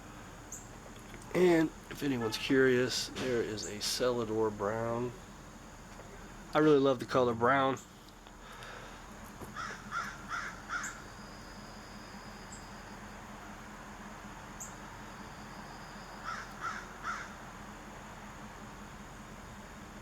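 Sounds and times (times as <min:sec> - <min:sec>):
faint background hum: 0:00.0 - 0:20.0
crow cawing: 0:08.4 - 0:11.4, 0:16.0 - 0:17.7.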